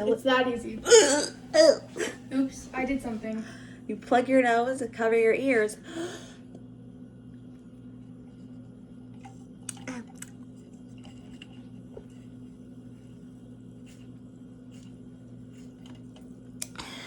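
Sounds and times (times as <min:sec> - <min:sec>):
steady low hum: 0:00.0 - 0:17.0.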